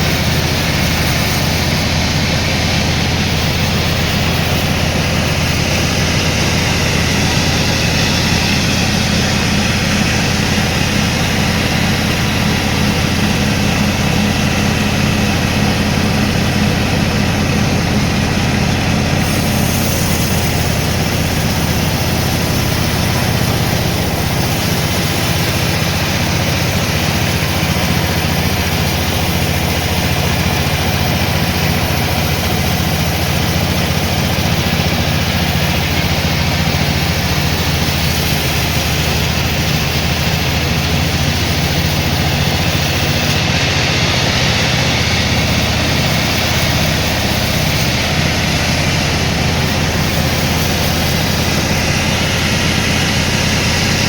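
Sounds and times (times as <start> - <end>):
sawmill machinery humming: 0.0 - 54.0.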